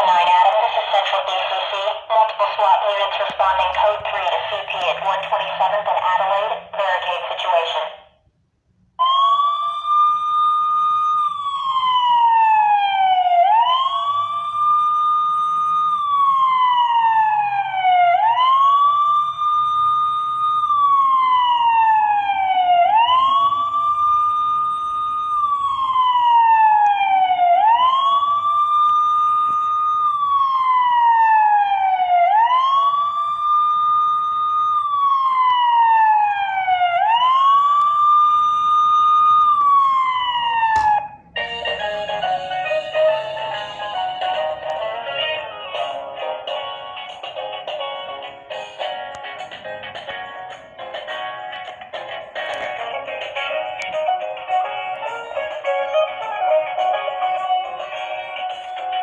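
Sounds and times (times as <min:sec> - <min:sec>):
electronic police siren wailing: 0:09.0 - 0:46.1.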